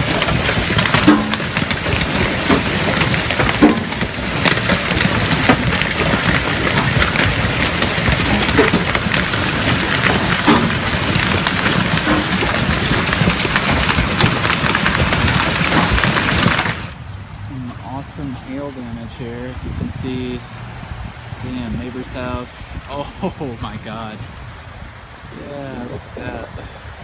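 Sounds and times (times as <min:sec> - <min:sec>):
hailstones knocking: 0:00.0 - 0:17.0, 0:21.5 - 0:27.0
heavy hail pelting: 0:00.0 - 0:17.0.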